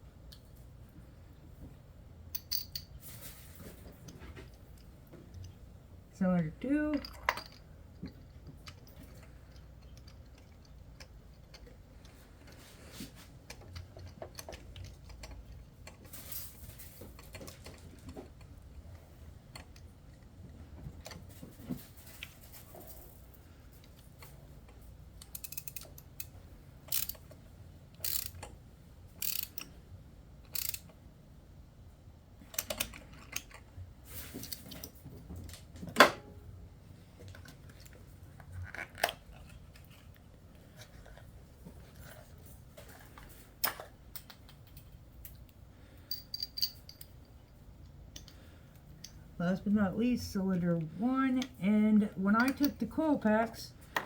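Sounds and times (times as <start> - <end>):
ratchet clicking: 25.3 - 26.3, 26.9 - 27.2, 28.0 - 28.5, 29.2 - 29.7, 30.5 - 30.9.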